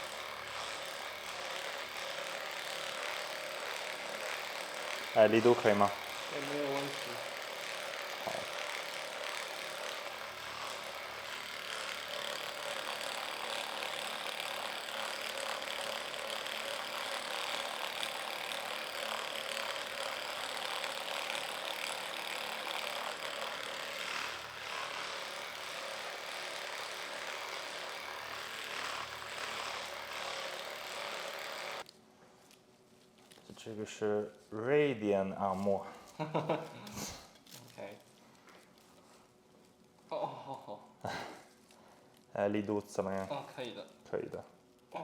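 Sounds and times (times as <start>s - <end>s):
electric massage gun running: 0.0s - 31.9s, 41.0s - 41.6s.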